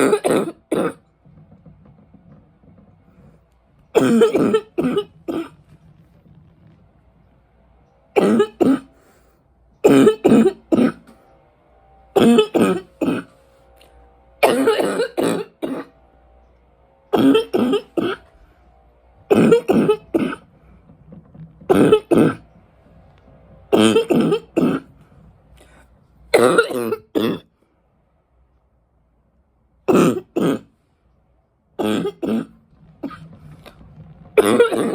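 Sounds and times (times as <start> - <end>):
woman coughing: 0.0 - 1.0, 4.0 - 5.6, 8.2 - 8.9, 9.9 - 11.0, 12.2 - 13.3, 14.4 - 15.9, 17.2 - 18.2, 19.3 - 20.4, 23.8 - 24.8, 26.4 - 27.4, 29.9 - 30.7, 34.4 - 34.9.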